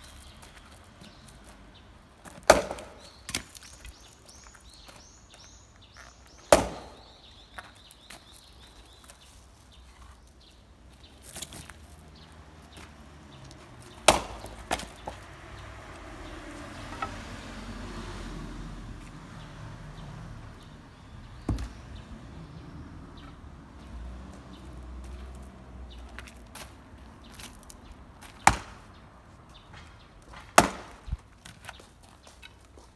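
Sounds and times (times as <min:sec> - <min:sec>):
axe striking wood: 0:02.4 - 0:03.5, 0:06.4 - 0:07.2, 0:14.0 - 0:15.2, 0:21.5 - 0:21.9, 0:28.4 - 0:28.9, 0:29.8 - 0:31.2.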